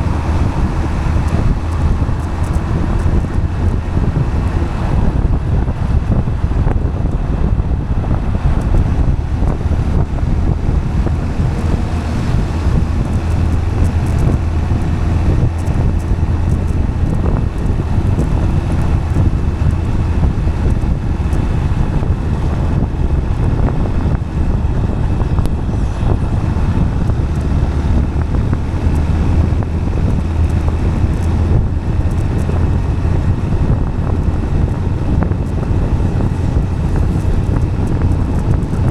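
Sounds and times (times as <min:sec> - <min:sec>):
tyres rolling on asphalt: 0:00.0 - 0:38.9
wind on microphone: 0:00.0 - 0:38.9.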